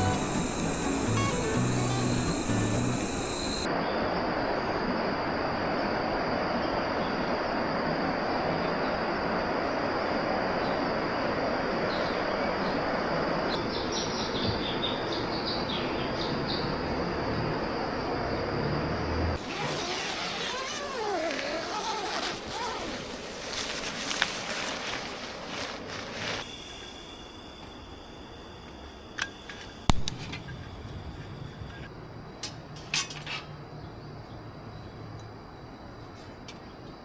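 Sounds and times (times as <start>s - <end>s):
thin high steady tone: 0.0s - 3.7s, 26.4s - 31.9s.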